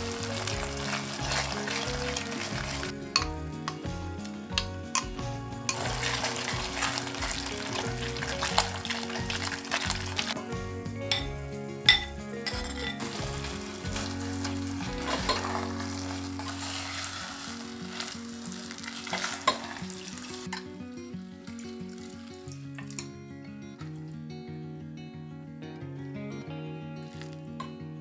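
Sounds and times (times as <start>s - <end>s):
food sizzling in hot oil: 0.0s - 10.4s, 11.1s - 20.6s.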